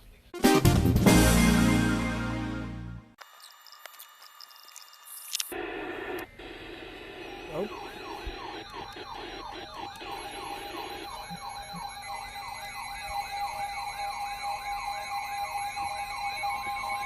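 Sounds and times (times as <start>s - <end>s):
electronic siren alarm yelping: 5.5s - 17.0s
steady alarm tone: 5.6s - 17.0s.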